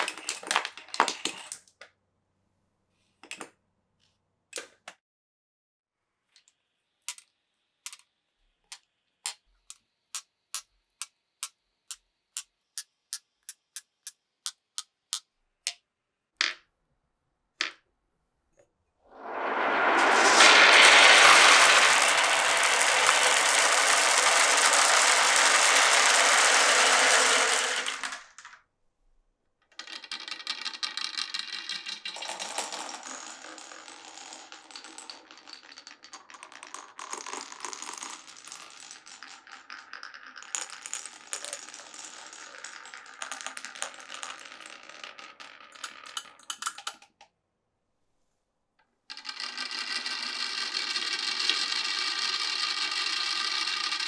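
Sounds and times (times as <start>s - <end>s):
marbles rattling through marble run: 0.0s - 1.6s, 19.3s - 28.4s, 29.8s - 47.0s, 49.1s - 54.0s
marbles clicking and ringing: 20.3s - 28.2s.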